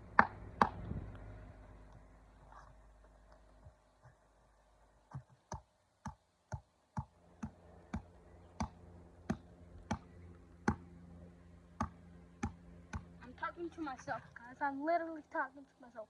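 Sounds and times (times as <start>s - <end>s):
hammer striking wood: 0.2s - 0.8s.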